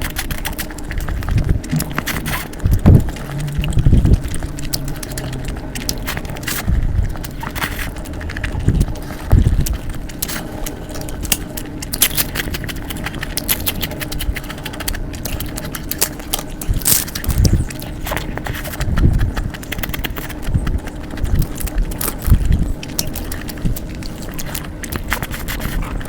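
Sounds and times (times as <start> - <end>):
chewing and mouth clicks: 0.0 - 26.0
low thumps: 1.3 - 7.6.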